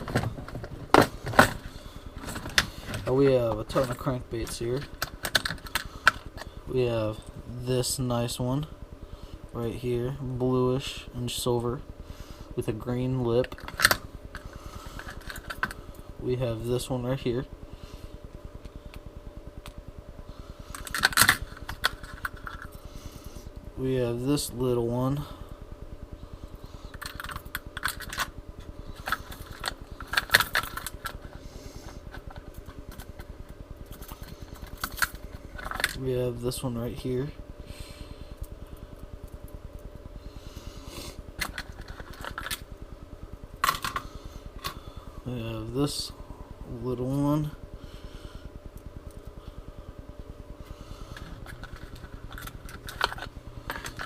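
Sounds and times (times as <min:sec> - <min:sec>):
low pulsing hum: 0:00.0 - 0:54.0.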